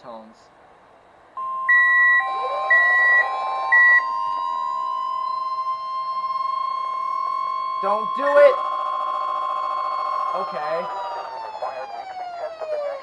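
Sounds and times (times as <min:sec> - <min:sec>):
two-pitch alternating beep: 0:01.4 - 0:11.8
steady high alert tone: 0:01.4 - 0:13.0.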